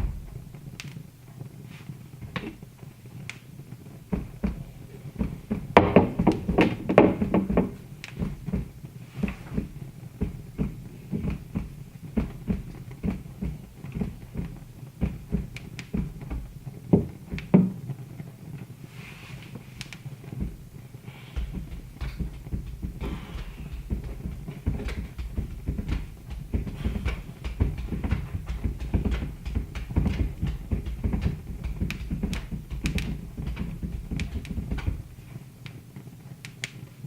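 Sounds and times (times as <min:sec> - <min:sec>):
wood fire crackling: 0:00.0 - 0:37.0.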